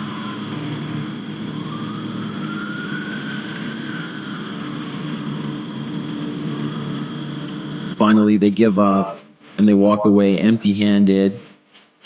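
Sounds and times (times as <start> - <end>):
distant police siren wailing: 0.0 - 9.2
low background hum: 0.0 - 11.8.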